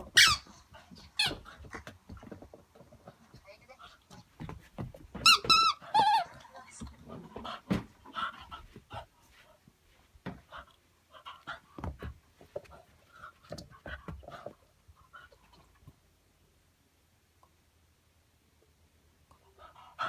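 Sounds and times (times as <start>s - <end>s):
ball and paws knocking: 0.8s - 6.2s, 6.8s - 9.1s, 10.2s - 10.6s, 11.5s - 14.7s
dog panting: 7.1s - 15.7s, 19.5s - 20.0s.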